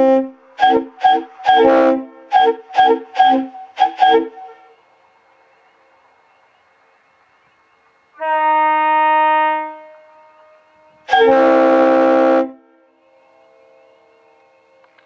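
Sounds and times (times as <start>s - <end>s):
train horn blast: 0.0s - 4.8s, 8.2s - 14.5s
truck air horn blast: 0.0s - 4.8s, 8.2s - 12.9s.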